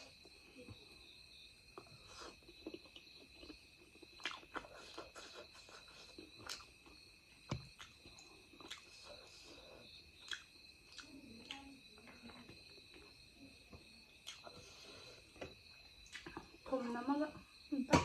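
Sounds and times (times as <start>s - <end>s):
chewing and mouth smacks: 1.7s - 13.2s, 14.1s - 14.7s, 15.4s - 16.6s.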